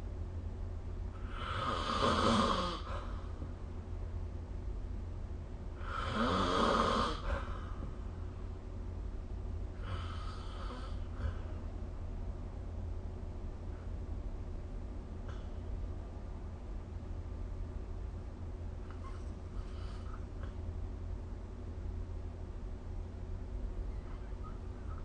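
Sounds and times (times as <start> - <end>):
person snoring: 1.2 - 3.0, 5.8 - 7.4.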